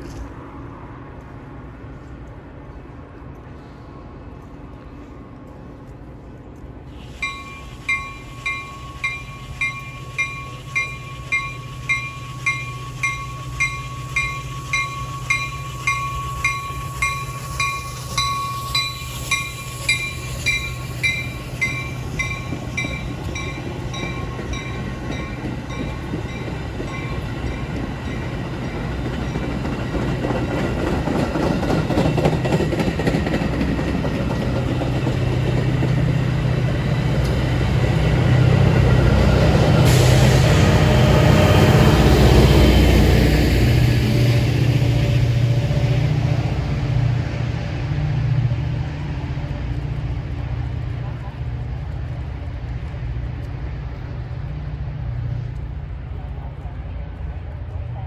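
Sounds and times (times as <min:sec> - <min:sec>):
train rumble: 0:00.0 - 0:58.0
crossing bell ringing: 0:07.1 - 0:32.8.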